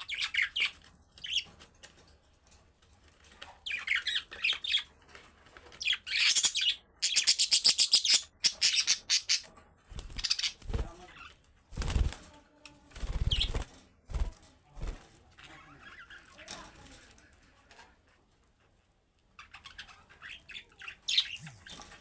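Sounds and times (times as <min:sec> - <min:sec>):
budgerigars chirping: 0:05.8 - 0:10.9
wings fluttering: 0:09.9 - 0:17.1.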